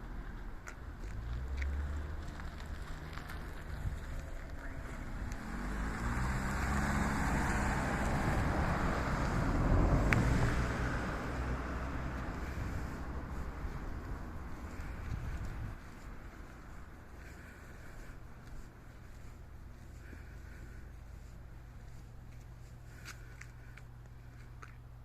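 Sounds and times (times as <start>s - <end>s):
vehicle passing close by: 1.2s - 15.9s.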